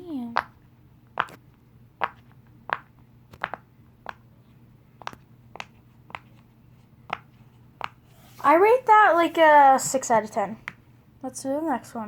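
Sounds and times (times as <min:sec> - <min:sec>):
fidget toy bubbles popping: 0:00.4 - 0:00.6.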